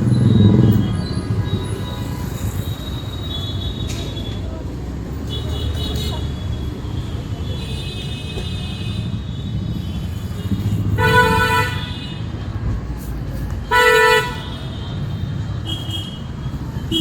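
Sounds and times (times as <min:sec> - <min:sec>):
road traffic rumble: 0:00.0 - 0:17.0
vehicle horn honks: 0:10.5 - 0:12.2, 0:13.7 - 0:14.8.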